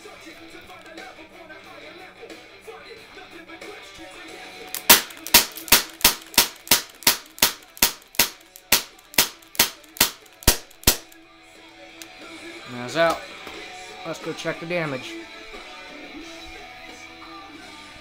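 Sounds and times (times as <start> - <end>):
airsoft pistol shots: 4.8 - 11.2.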